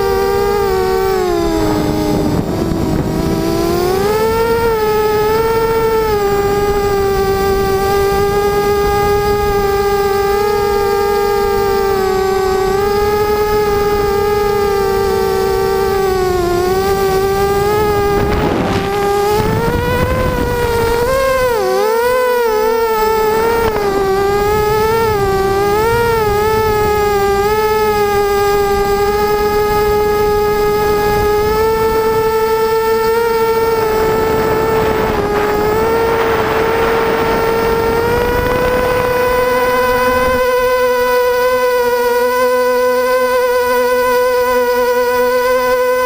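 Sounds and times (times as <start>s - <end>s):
drone propellers whining: 0.0s - 46.0s
wind rushing: 1.1s - 10.0s, 12.3s - 32.3s, 33.3s - 41.1s.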